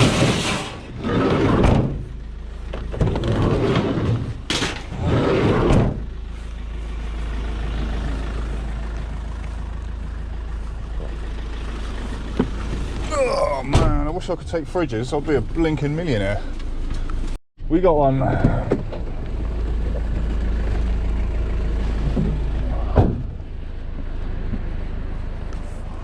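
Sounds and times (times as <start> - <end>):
scrap metal clattering bangs: 0.0 - 2.2
vehicle engine rumbling: 0.0 - 26.0.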